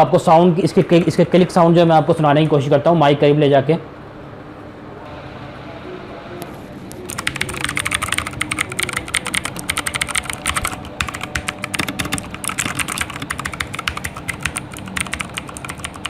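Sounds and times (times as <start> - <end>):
mechanical keyboard typing: 7.1 - 16.0.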